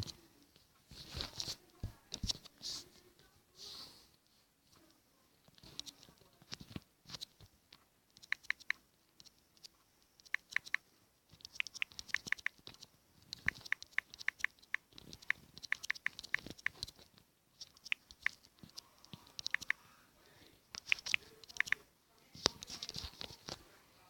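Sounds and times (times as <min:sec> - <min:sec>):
keyboard typing clicks: 0:08.2 - 0:10.8, 0:11.4 - 0:17.0, 0:17.6 - 0:19.8, 0:20.8 - 0:21.8.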